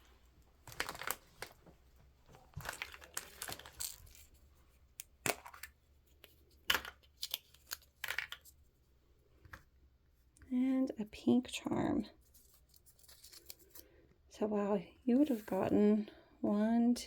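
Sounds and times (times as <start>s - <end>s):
wrapping tearing and crinkling: 0.6s - 1.7s, 2.3s - 4.4s, 12.2s - 13.8s.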